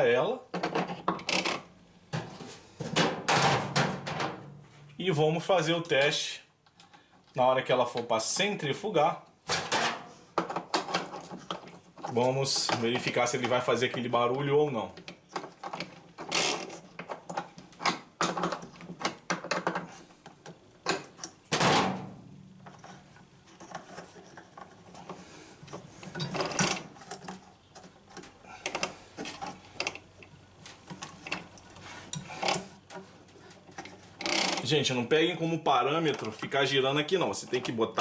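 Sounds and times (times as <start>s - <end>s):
washing machine parts rattling: 0.5s - 4.5s, 9.5s - 34.8s.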